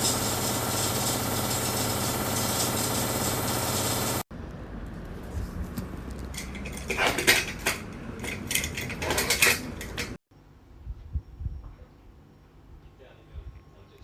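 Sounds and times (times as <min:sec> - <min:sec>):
metal parts clinking: 0:06.2 - 0:10.2.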